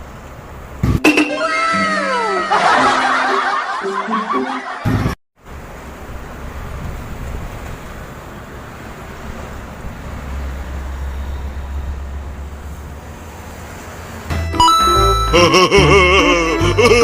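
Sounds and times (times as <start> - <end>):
road traffic rumble: 0.0 - 0.9, 5.4 - 17.0
music: 14.3 - 17.0.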